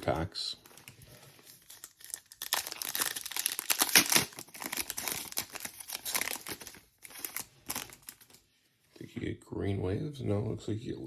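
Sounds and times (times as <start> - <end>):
card pack wrappers crinkling: 0.0 - 8.4.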